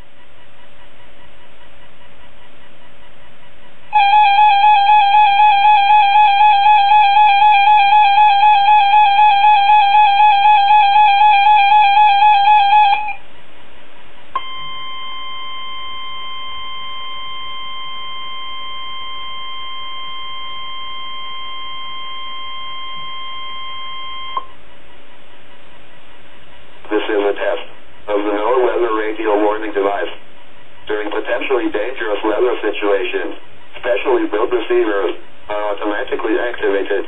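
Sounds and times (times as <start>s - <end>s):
steady alarm tone: 3.8s - 13.3s, 14.4s - 24.5s
warbling electronic tone: 3.9s - 13.2s
radio hiss: 26.8s - 37.0s.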